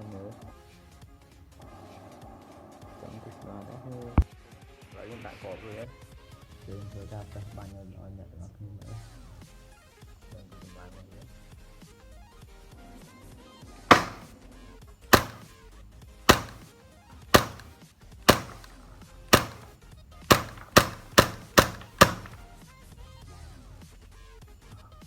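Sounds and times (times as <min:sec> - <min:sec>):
airsoft pistol shots: 0:13.9 - 0:14.3, 0:15.2 - 0:15.4, 0:16.3 - 0:16.6, 0:17.4 - 0:17.7, 0:18.3 - 0:18.7, 0:19.4 - 0:19.7, 0:20.3 - 0:22.4.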